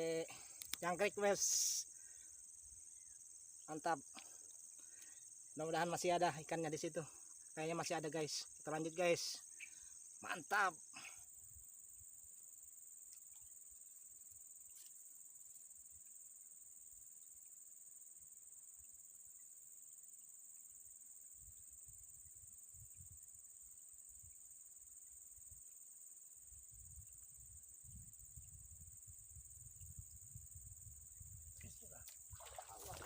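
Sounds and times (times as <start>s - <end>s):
high-pitched insect chirring: 0.0s - 15.0s.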